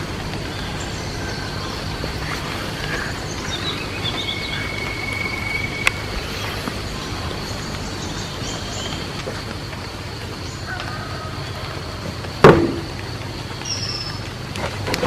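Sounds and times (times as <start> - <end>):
high insect drone: 0.0 - 15.0
bird-like chirps: 0.3 - 9.5, 13.4 - 14.8.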